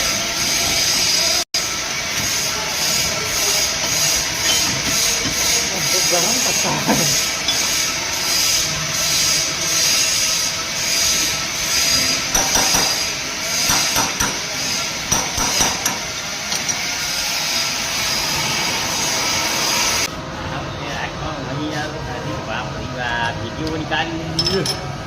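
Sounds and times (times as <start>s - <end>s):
lathe running with whine: 0.0s - 13.8s.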